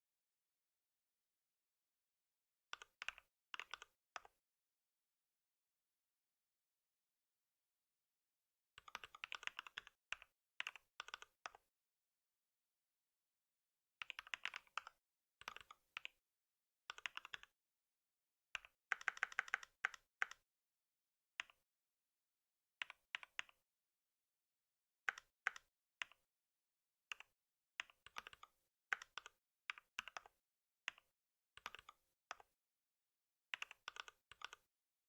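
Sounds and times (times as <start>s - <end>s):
computer keyboard typing: 8.8s - 11.4s, 17.0s - 17.5s, 18.6s - 20.4s, 28.1s - 30.3s, 33.5s - 34.6s.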